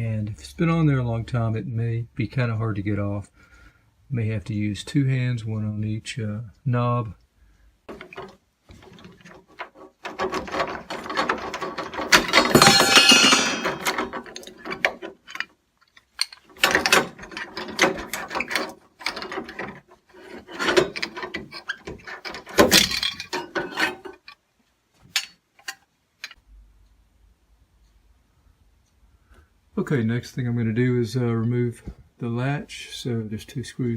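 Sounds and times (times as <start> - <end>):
metal doorknob rattling: 7.9 - 24.4.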